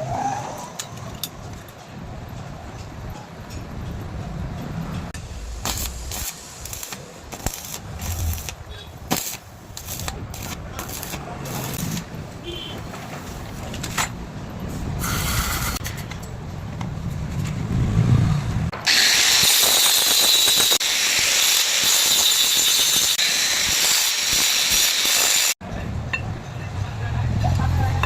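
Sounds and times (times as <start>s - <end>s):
low rumble: 4.6s - 8.7s
angle grinder grinding steel: 5.2s - 12.1s, 18.8s - 25.6s.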